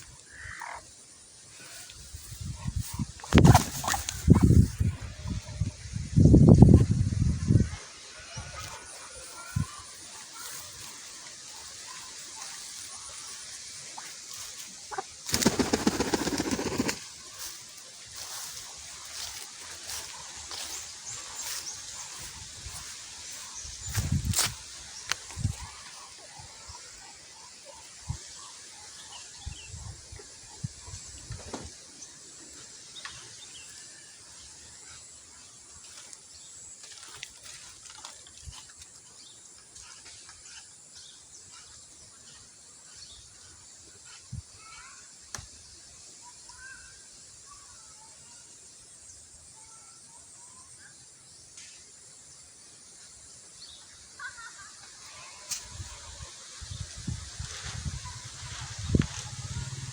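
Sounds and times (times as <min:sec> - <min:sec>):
steady high hiss: 0:00.0 - 0:36.7.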